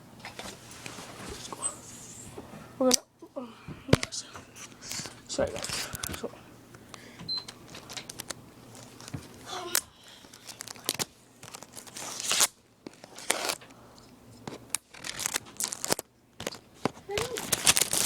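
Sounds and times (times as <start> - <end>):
packaging rustling and ripping: 10.1 - 13.7, 14.4 - 18.0.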